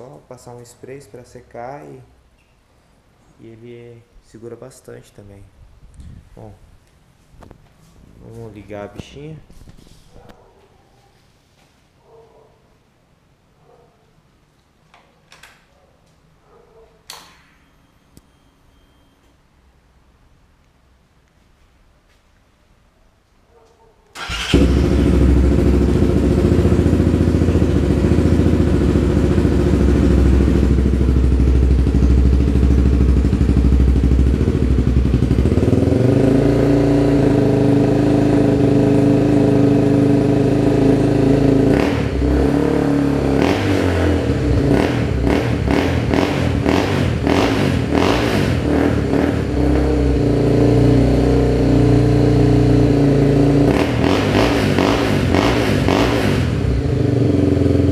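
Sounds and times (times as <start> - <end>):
motorcycle engine idling and revving: 24.2 - 57.9.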